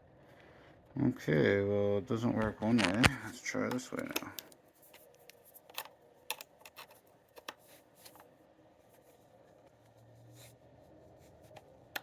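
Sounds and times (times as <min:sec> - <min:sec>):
charging plug clicks and rustles: 0:02.3 - 0:08.3.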